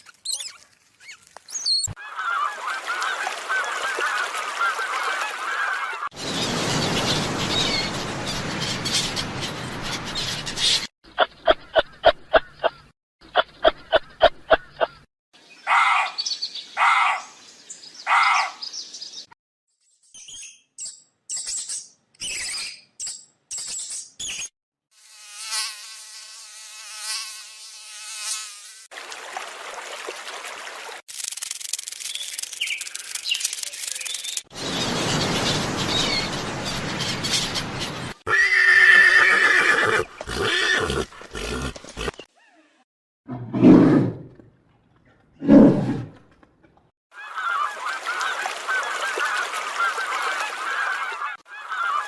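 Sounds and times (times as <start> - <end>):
flying insect buzzing: 25.0 - 28.9.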